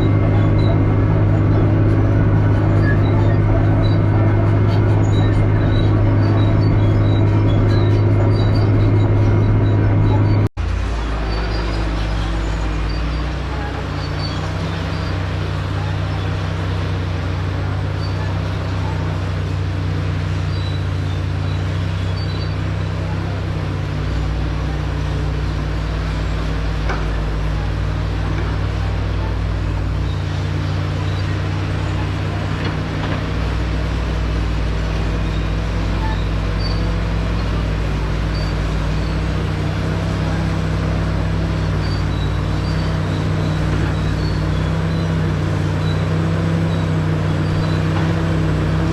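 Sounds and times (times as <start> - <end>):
bulldozer diesel engine running: 0.0 - 48.9.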